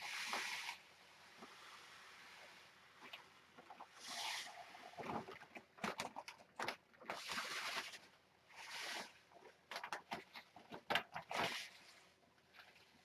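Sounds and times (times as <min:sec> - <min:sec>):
litter granules sliding: 0:03.8 - 0:05.0, 0:07.0 - 0:09.2.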